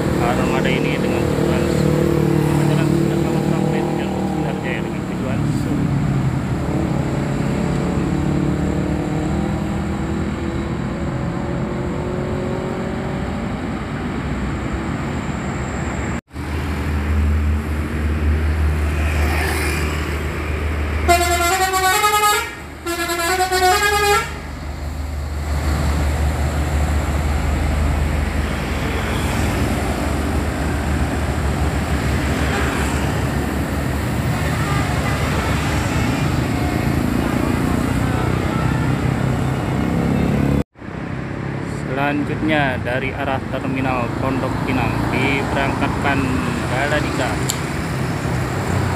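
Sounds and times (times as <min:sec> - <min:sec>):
road traffic: 0:00.0 - 0:48.9
bus engine running: 0:19.9 - 0:41.8
bus multi-tone horn melody: 0:21.0 - 0:24.6, 0:32.2 - 0:33.2, 0:34.2 - 0:40.6.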